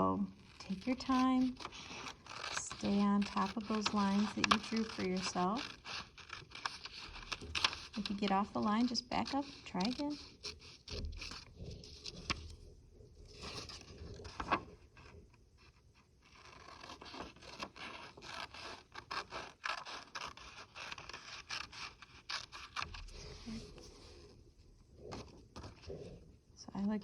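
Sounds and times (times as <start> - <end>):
scissors cutting paper: 0.3 - 12.6, 13.3 - 15.2, 16.3 - 23.8.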